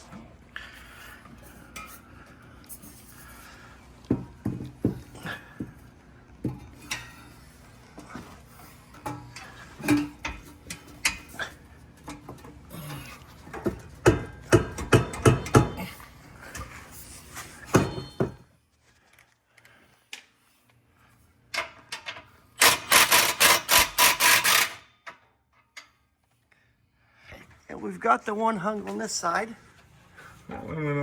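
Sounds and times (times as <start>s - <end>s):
metal parts knocking and scraping: 21.6s - 25.2s.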